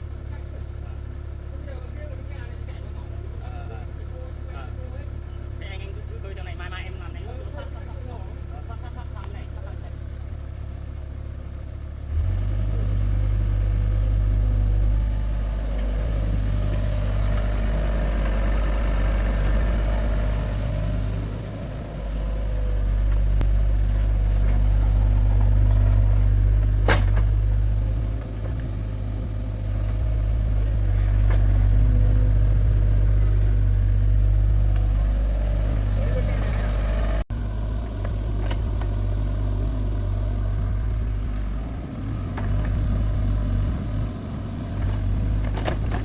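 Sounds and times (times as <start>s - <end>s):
excavator diesel engine rumbling: 0.0s - 46.0s.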